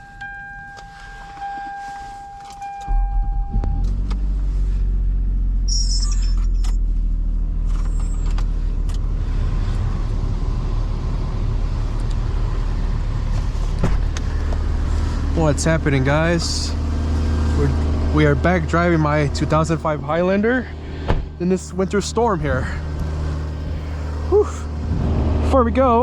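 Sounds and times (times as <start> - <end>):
car engine starting and idling: 0.0 - 26.0
steady electronic tone: 1.9 - 4.4.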